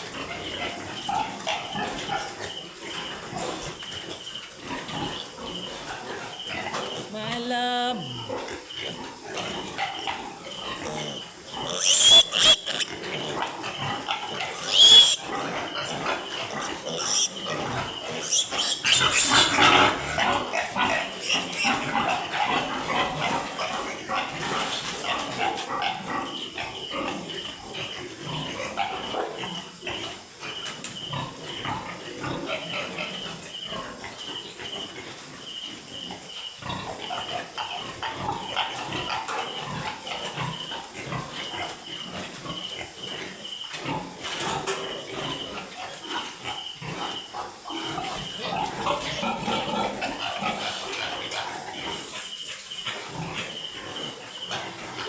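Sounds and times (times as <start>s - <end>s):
piglets squealing and grunting: 0.0s - 55.0s.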